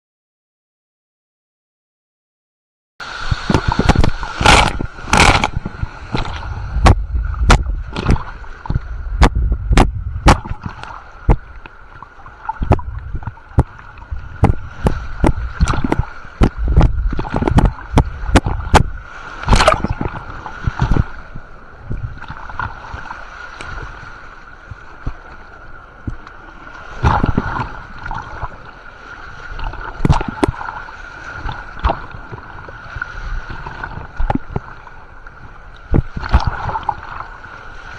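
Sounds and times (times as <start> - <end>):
water rushing down a slide: 3.0 - 11.4
sharp knocks and low thumps: 3.3 - 11.5, 12.6 - 21.1.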